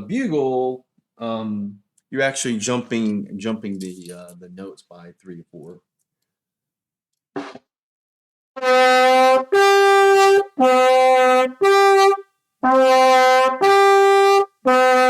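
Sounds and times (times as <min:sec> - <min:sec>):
bugle notes: 0:08.6 - 0:15.0.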